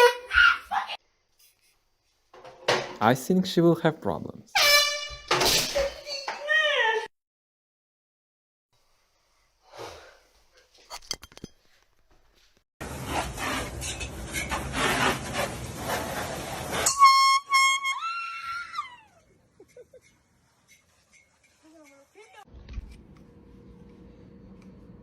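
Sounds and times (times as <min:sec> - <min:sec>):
reedy air horn toots: 0:04.6 - 0:05.3, 0:16.8 - 0:18.2.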